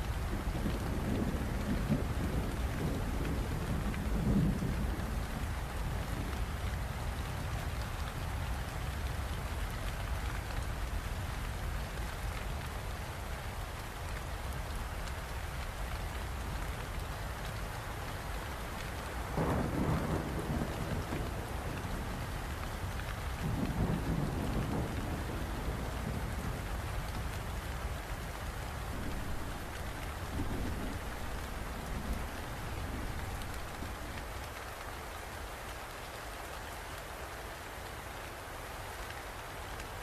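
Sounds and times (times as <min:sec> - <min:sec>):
steady rain falling: 0:00.0 - 0:40.0
distant thunder: 0:19.3 - 0:22.2, 0:23.4 - 0:26.9, 0:28.9 - 0:34.3.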